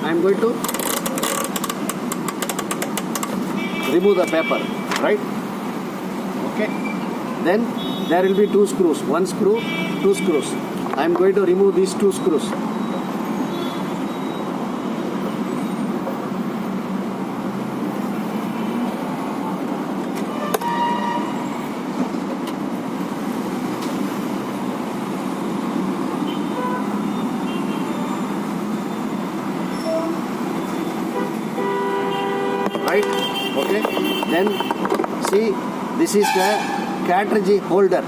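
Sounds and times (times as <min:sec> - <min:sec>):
background traffic noise: 0:00.0 - 0:38.0
faint horn toots: 0:36.2 - 0:37.1.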